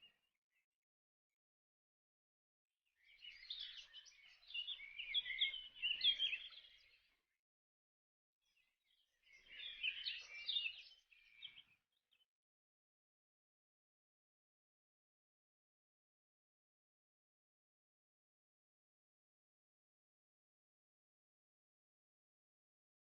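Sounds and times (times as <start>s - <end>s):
birds chirping: 3.1s - 7.2s, 8.6s - 11.8s.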